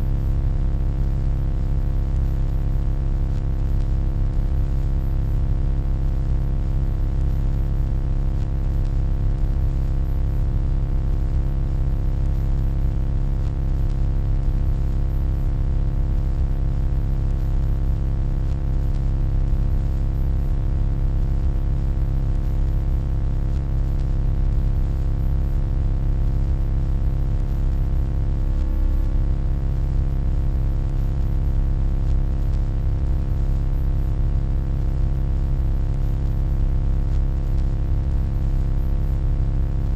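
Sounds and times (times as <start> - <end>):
deep electronic hum: 0.0 - 0.8, 24.5 - 33.9.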